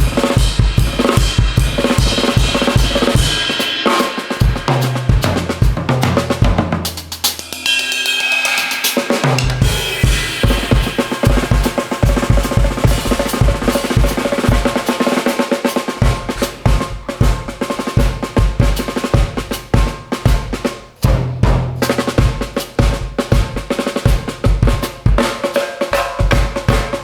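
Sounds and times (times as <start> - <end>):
cymbal crashes: 0.0 - 6.2, 7.2 - 17.6
snare and drum strokes: 0.0 - 27.0
fast bass drum hits: 4.4 - 14.9, 16.0 - 25.2.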